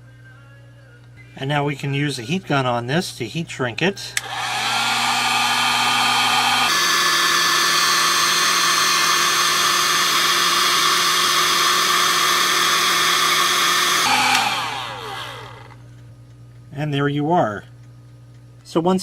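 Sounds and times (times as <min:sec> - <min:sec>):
heat gun blowing: 0:04.2 - 0:15.8.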